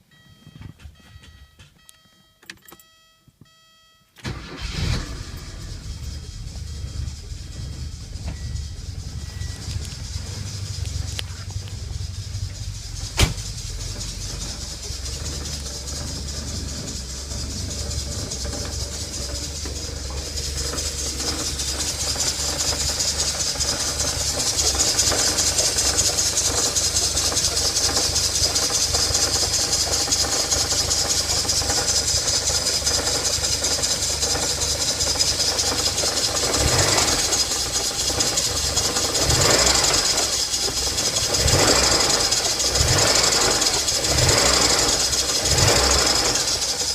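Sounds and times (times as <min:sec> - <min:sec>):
car engine running: 0:04.2 - 0:46.9.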